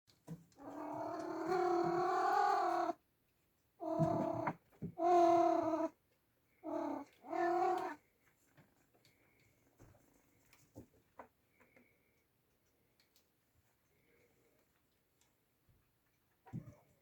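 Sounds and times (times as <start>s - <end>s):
cat meowing loudly: 6.7s - 8.0s.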